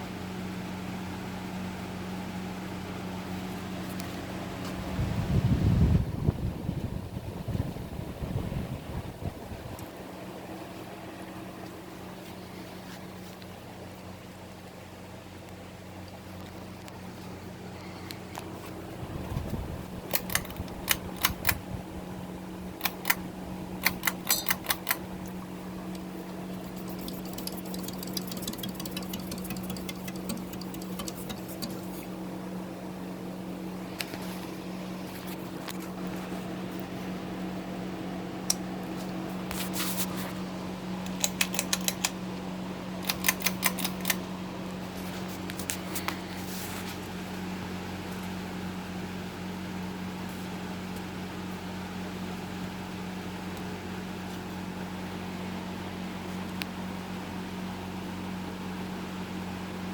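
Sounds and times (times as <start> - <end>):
ceiling fan motor hum: 0.0 - 59.9
sharp clicks: 20.0 - 21.6, 22.8 - 25.0, 26.8 - 32.1, 41.0 - 42.2, 43.0 - 44.3.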